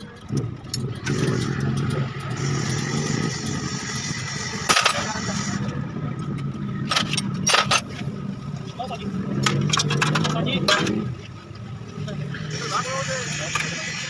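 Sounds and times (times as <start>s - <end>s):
vehicle engine hum: 0.0s - 14.0s
metal tools clinking: 6.3s - 8.1s, 9.3s - 11.1s.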